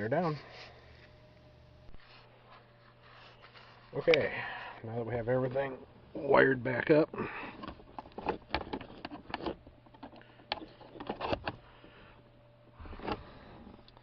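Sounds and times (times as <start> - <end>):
faint low hum: 0.0 - 14.0
plastic parts clicking and knocking: 7.6 - 11.6.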